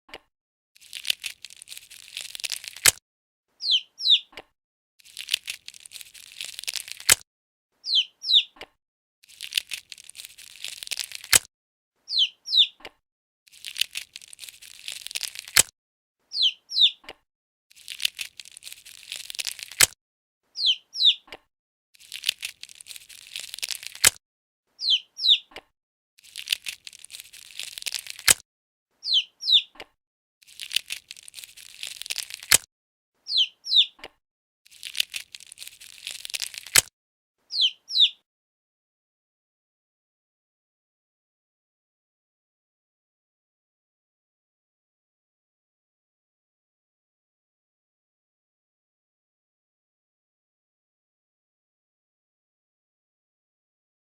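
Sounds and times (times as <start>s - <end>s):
eggshell crackling: 0.8s - 3.0s, 5.0s - 7.2s, 9.2s - 11.5s, 13.5s - 15.7s, 17.8s - 20.0s, 22.0s - 24.2s, 26.2s - 28.4s, 30.4s - 32.6s, 34.7s - 36.9s
eggshell snapping: 0.8s - 3.0s, 5.0s - 7.2s, 9.3s - 11.5s, 13.5s - 15.7s, 17.8s - 20.0s, 22.0s - 24.2s, 26.2s - 28.4s, 30.4s - 32.7s, 34.7s - 36.9s
chick peeping: 3.6s - 4.5s, 7.8s - 8.7s, 12.1s - 13.0s, 16.3s - 17.2s, 20.6s - 21.4s, 24.8s - 25.6s, 29.0s - 29.9s, 33.3s - 34.1s, 37.5s - 38.2s.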